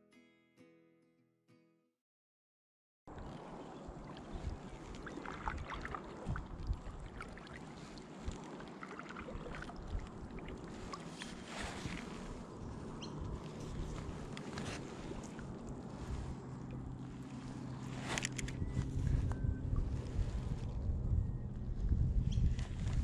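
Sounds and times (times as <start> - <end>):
low rumble on microphone: 3.1 - 8.4, 9.3 - 23.0
water lapping against hull: 3.1 - 23.0.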